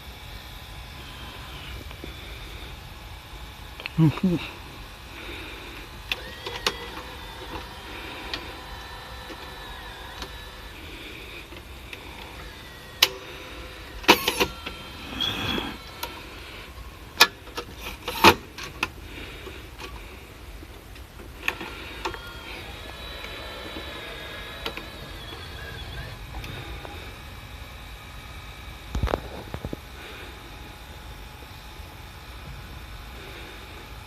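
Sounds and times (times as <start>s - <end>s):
tape mechanism motor whirring: 0.0s - 34.0s
mechanical clicks and clunks: 5.9s - 19.0s, 20.9s - 27.2s.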